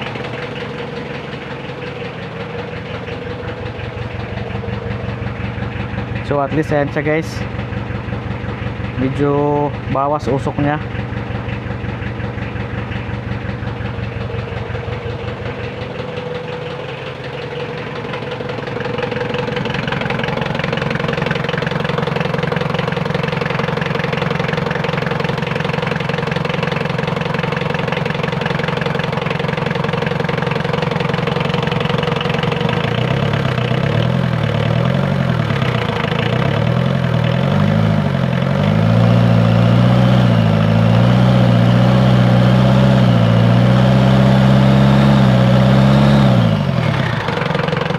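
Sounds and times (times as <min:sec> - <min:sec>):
diesel engine idling: 0:00.0 - 0:47.9.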